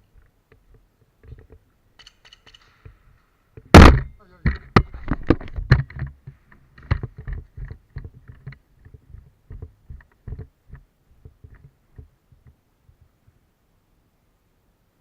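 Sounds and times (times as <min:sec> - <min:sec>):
light knocks and thuds: 0:03.6 - 0:13.1.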